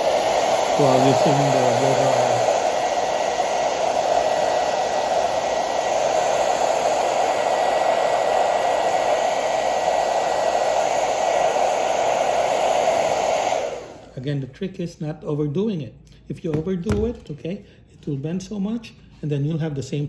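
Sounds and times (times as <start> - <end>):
blow dryer running: 0.0 - 14.2.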